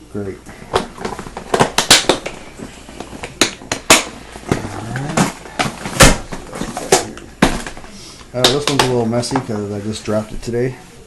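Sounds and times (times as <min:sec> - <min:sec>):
plastic boxes clicking and clacking: 0:08.4 - 0:09.6.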